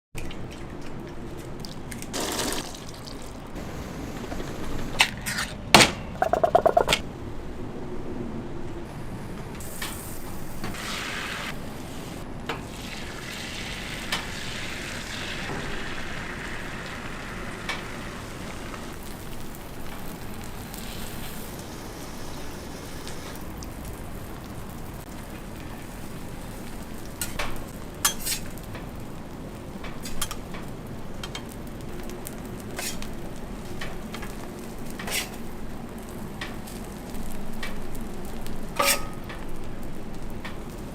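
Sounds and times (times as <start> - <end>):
sharp clicks and taps: 6.2 - 7.0
toast sizzling in a pan: 9.6 - 40.9.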